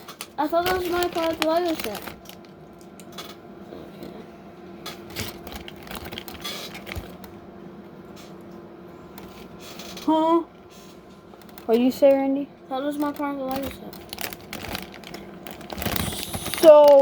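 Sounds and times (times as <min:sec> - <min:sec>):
faint steady hum: 0:00.0 - 0:17.0
plastic bricks clicking and clattering: 0:00.5 - 0:02.4.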